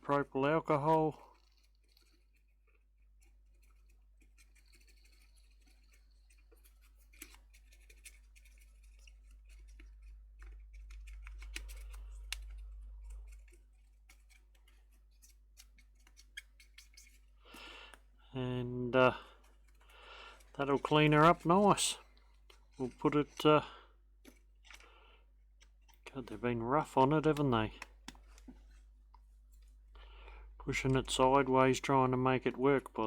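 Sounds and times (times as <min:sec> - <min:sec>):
faint scratching and scrubbing: 0:00.0 - 0:33.0
small clicks: 0:00.8 - 0:18.1
low steady hum: 0:06.4 - 0:33.0.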